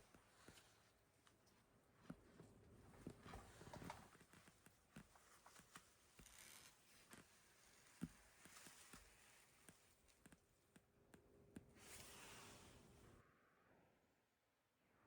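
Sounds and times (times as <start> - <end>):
soft hisses: 11.8 - 13.2.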